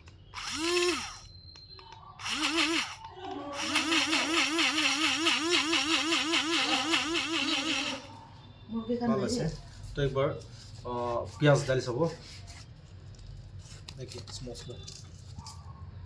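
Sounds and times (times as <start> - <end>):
mini grinder motor whirring: 0.3 - 1.3, 2.2 - 8.1.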